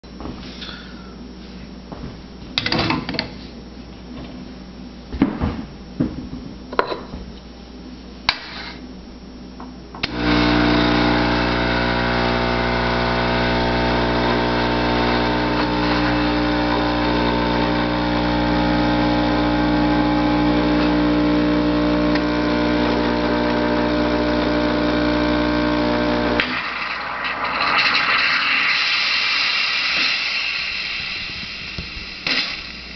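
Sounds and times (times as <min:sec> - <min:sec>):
espresso machine pump humming: 0:10.0 - 0:32.9.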